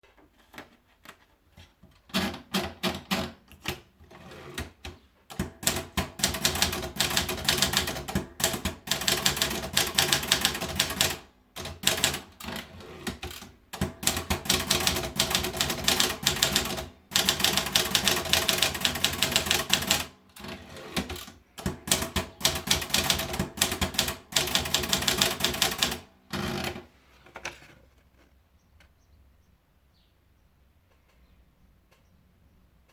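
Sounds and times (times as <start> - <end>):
typewriter keys clacking: 5.7 - 20.1, 21.0 - 26.0.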